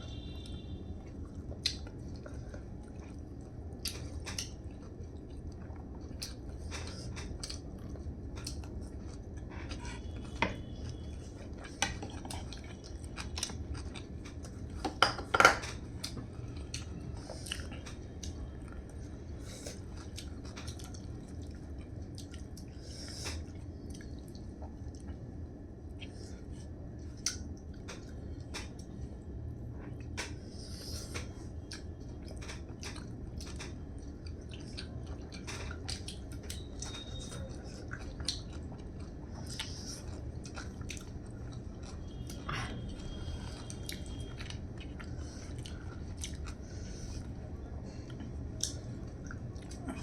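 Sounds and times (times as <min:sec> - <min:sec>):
soft chewing: 0:00.1 - 0:14.9, 0:15.6 - 0:50.0
dishes clattering: 0:14.9 - 0:15.8.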